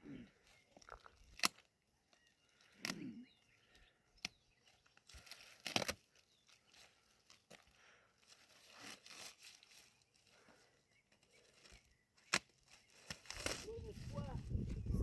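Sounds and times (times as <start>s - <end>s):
rustling and crinkling: 4.5s - 15.0s.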